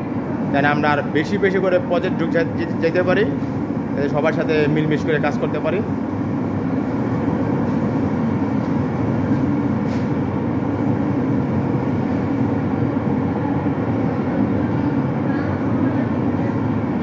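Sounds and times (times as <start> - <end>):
low mechanical rumble: 0.0 - 17.0.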